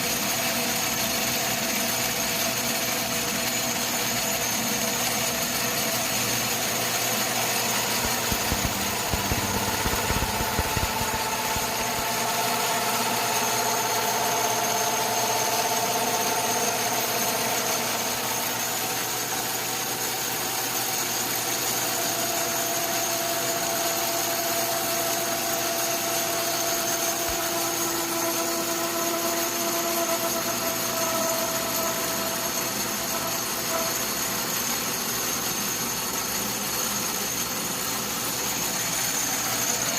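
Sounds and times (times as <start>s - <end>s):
metal lathe humming: 0.2s - 19.6s, 26.8s - 35.9s
whining cutting tone: 4.1s - 19.0s, 26.8s - 34.7s.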